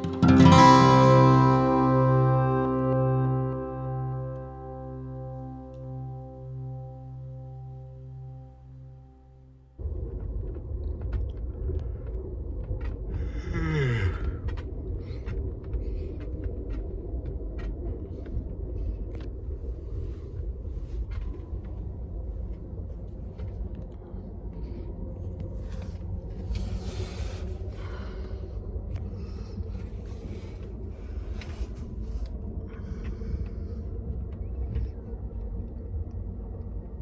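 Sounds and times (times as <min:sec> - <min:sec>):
falling tone: 0:00.0 - 0:08.4.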